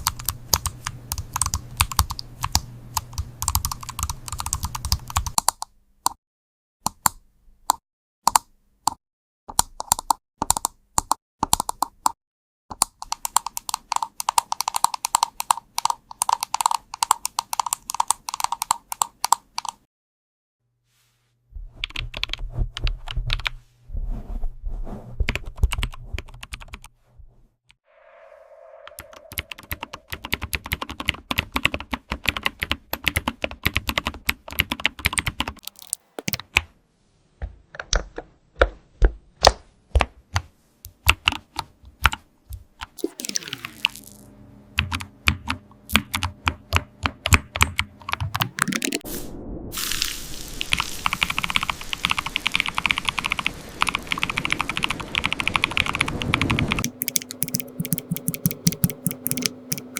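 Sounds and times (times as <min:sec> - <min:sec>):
computer keyboard typing: 0:00.0 - 0:05.6, 0:12.8 - 0:19.8, 0:29.4 - 0:36.4, 0:44.8 - 0:49.0, 0:50.7 - 0:59.9.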